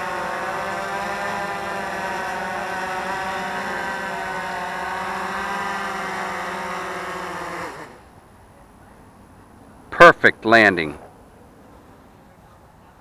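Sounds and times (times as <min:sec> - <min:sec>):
drone propellers whining: 0:00.0 - 0:08.1.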